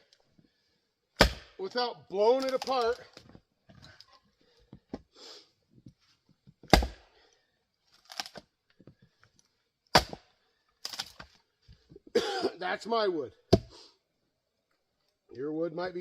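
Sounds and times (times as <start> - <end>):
axe splitting wood: 1.2 - 1.6, 6.6 - 7.1, 8.1 - 8.5, 9.9 - 11.3.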